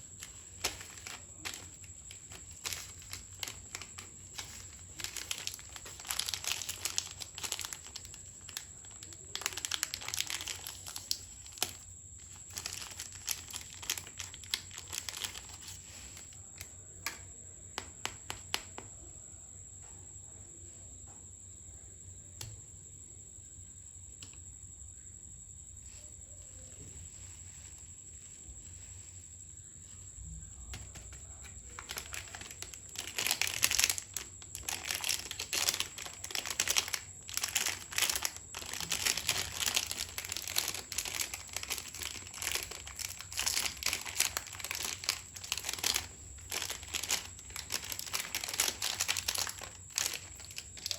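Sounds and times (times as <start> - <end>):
plastic snack packets crackling: 0.0 - 17.2, 30.8 - 50.9.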